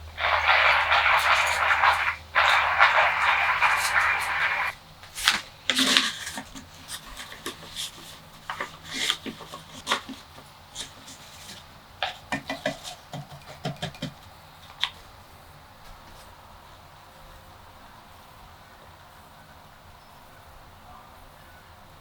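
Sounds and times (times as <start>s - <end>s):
objects clicking and tapping: 0.4s - 15.0s.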